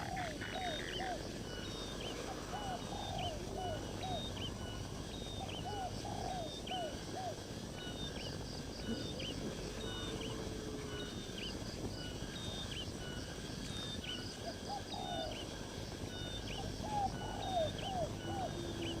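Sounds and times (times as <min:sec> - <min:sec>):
lower arched bird calls: 0:00.0 - 0:19.0
outdoor background noise: 0:00.0 - 0:19.0.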